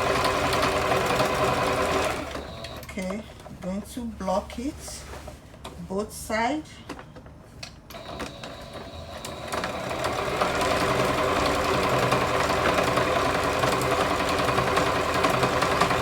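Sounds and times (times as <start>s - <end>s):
sewing machine stitching: 0.0s - 3.0s, 7.9s - 16.0s.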